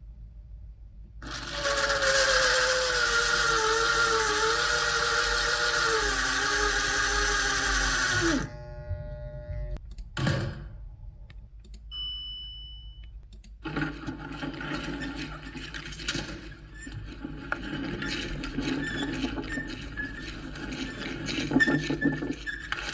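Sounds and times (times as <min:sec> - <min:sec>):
mechanical whirring and clicking: 0:01.2 - 0:11.9, 0:13.1 - 0:22.9
short electric hum: 0:05.8 - 0:11.9.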